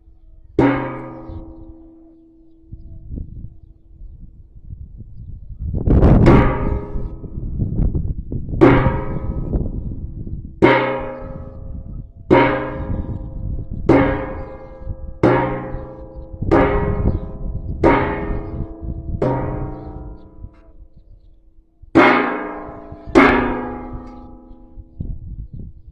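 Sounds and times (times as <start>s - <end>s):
resonant object struck ringing: 0.6s - 3.6s, 6.3s - 7.8s, 8.6s - 20.9s, 22.0s - 25.2s.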